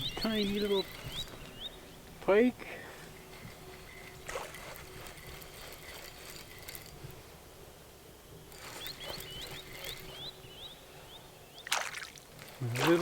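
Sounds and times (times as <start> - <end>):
bird chirping: 0.0 - 2.1, 8.6 - 11.9
faint water splashing: 11.6 - 13.0.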